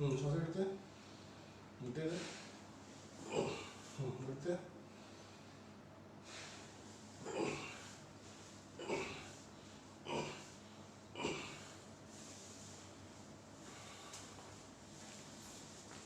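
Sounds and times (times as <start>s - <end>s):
person breathing hard: 4.9s - 8.1s, 13.6s - 14.5s.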